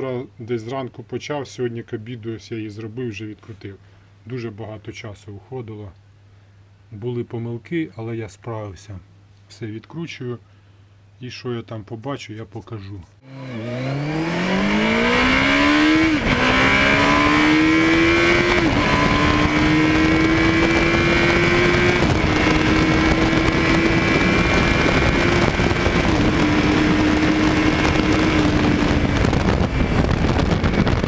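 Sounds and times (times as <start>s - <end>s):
motorcycle engine accelerating: 13.2s - 31.0s
wind rushing: 13.4s - 31.0s.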